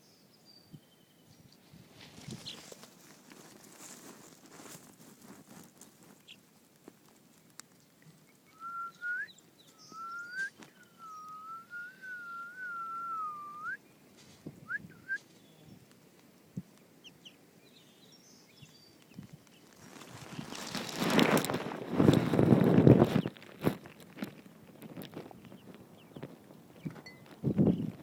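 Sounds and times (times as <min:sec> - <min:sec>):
person whistling: 0:08.6 - 0:13.8, 0:14.7 - 0:15.2
chicks peeping: 0:17.0 - 0:17.4, 0:25.2 - 0:28.0.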